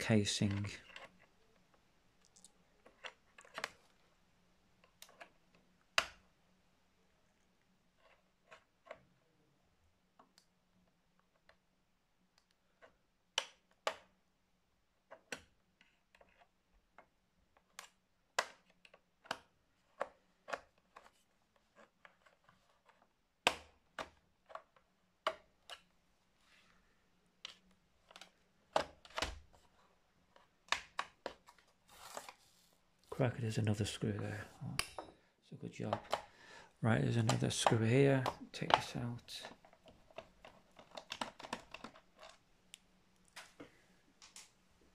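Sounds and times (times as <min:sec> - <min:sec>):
plastic casing clicking: 0:37.2 - 0:42.4.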